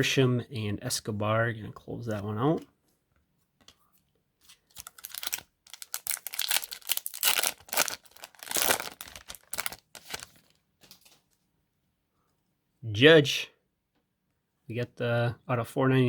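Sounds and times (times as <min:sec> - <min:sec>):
foil wrapper tearing and crinkling: 0:04.5 - 0:10.6.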